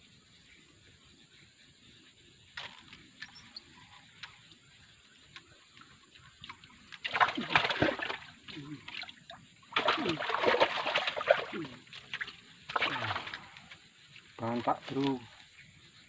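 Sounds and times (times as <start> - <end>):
fish splashing in water: 6.4 - 13.6.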